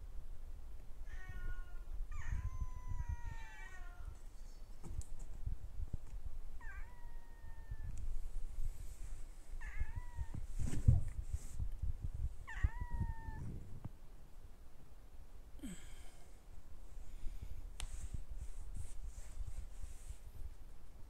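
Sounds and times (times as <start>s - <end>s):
cat meowing: 1.0s - 4.2s, 6.6s - 8.0s, 9.6s - 10.6s, 12.5s - 13.5s
rustling: 7.9s - 11.8s, 17.8s - 20.6s.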